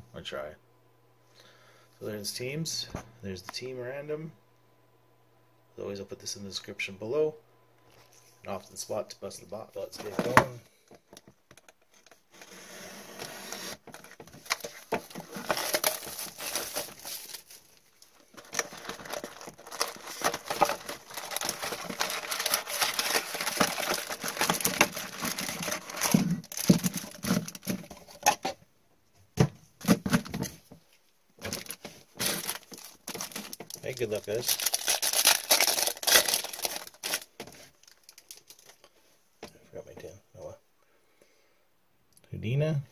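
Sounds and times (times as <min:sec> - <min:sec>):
plastic wrapping crinkling: 0:13.2 - 0:28.4, 0:31.4 - 0:38.9.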